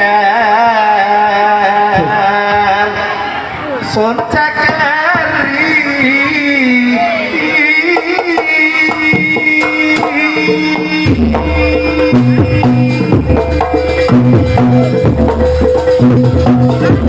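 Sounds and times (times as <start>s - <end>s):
held pitched tones: 2.8s - 17.0s
deep repeating low beat: 6.9s - 17.0s
gamelan percussion: 6.9s - 17.0s
hand drums: 7.6s - 17.0s.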